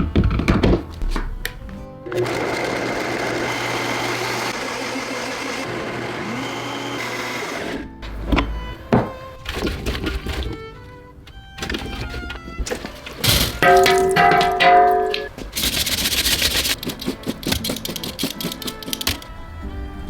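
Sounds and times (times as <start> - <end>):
electric blender motor running: 2.1 - 7.9
knocks: 8.4 - 9.2, 13.3 - 15.5.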